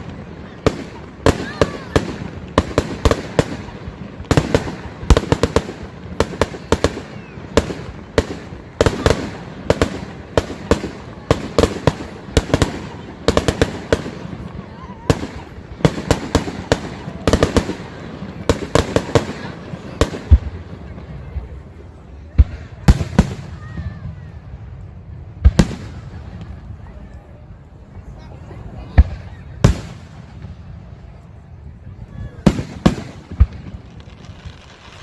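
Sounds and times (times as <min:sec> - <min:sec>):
fireworks bangs and crackling: 0:00.0 - 0:35.0.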